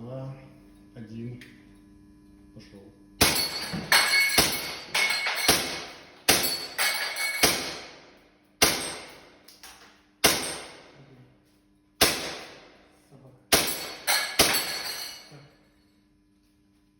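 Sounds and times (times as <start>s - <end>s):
airsoft pistol shots: 3.2s - 3.7s, 4.3s - 6.8s, 7.4s - 9.5s, 10.2s - 11.0s, 12.0s - 12.8s, 13.5s - 14.8s
metallic ring of steel plates: 3.2s - 7.6s, 13.6s - 15.5s.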